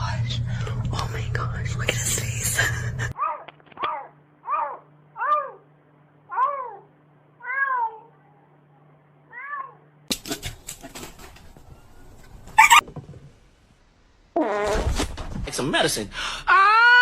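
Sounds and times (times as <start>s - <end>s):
cat meowing: 6.3s - 8.2s, 12.6s - 12.8s.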